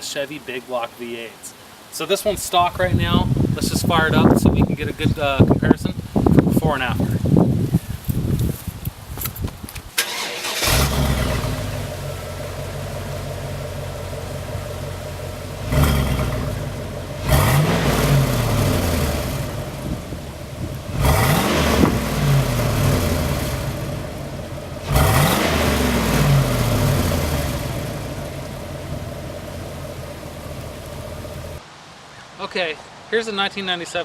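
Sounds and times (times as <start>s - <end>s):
engine idling and revving: 10.0s - 31.6s.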